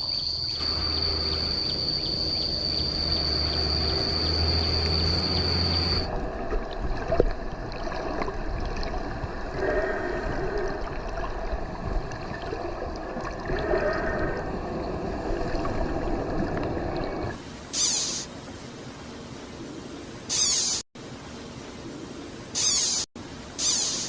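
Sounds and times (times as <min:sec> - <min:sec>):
water gurgling: 0:06.0 - 0:17.4.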